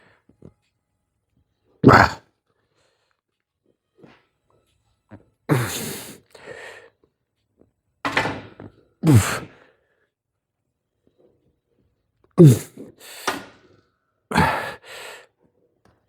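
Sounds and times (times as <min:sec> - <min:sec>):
man grunting exhales: 0:05.5 - 0:06.2, 0:09.0 - 0:09.5, 0:12.4 - 0:12.8, 0:14.3 - 0:15.0.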